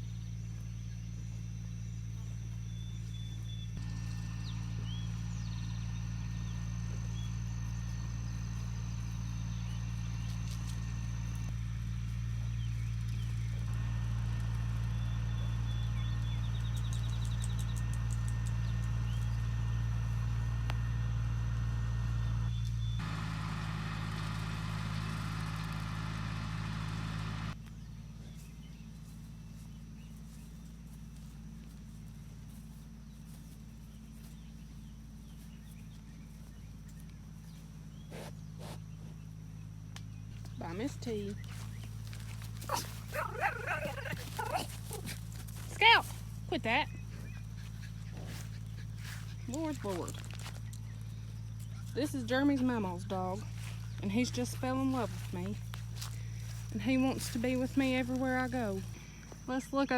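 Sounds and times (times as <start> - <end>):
faint bird chirps: 0.0 - 13.7, 46.1 - 52.0
engine idling: 0.0 - 59.7.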